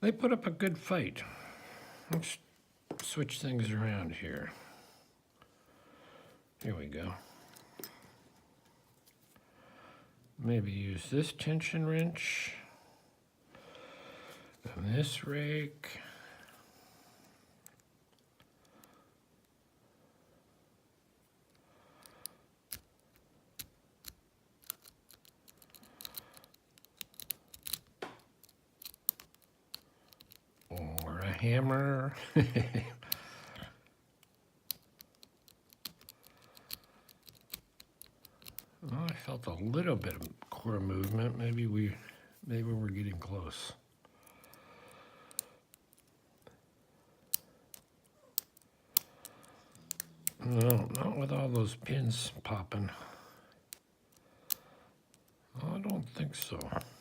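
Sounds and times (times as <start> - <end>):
lock pins clicking: 22.7 - 31.3, 34.2 - 39.3, 47.2 - 51.8
lock pick scraping in lock: 34.7 - 38.7.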